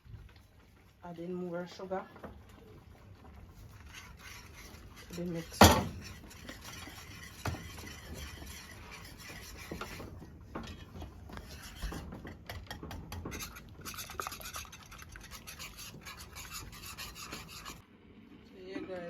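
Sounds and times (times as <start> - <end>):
spoon scraping a pot: 3.2 - 17.8
spoon knocking against pot: 5.4 - 6.8.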